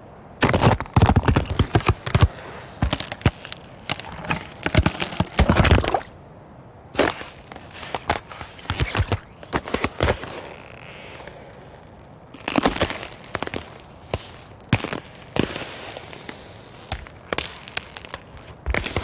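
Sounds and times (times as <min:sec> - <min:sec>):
ice cracking and breaking: 0:00.4 - 0:06.2, 0:07.0 - 0:19.0.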